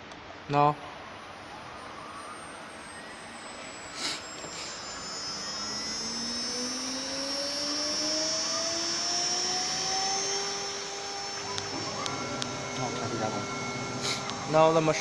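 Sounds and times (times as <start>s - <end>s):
spindle motor whine rising: 0.0s - 15.0s
steady hiss: 3.9s - 5.4s.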